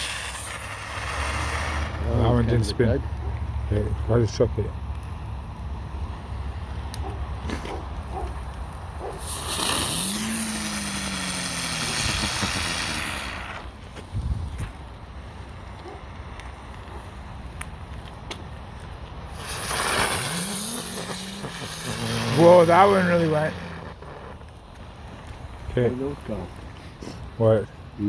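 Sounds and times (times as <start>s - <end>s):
spinning firework hissing: 0.0s - 2.7s, 8.1s - 14.3s, 19.2s - 25.6s
firework whirring tone: 0.0s - 2.8s, 6.9s - 15.8s, 19.1s - 25.7s.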